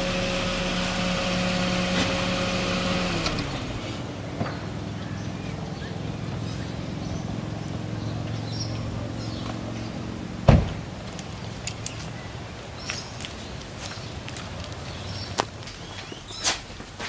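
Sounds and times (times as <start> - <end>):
loud thump: 0.0 - 4.7, 10.5 - 10.8
car engine running: 0.0 - 11.1.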